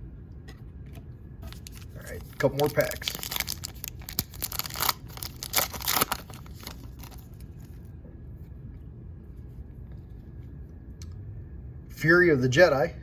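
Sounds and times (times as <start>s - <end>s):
wrapper tearing and crinkling: 1.5s - 7.6s.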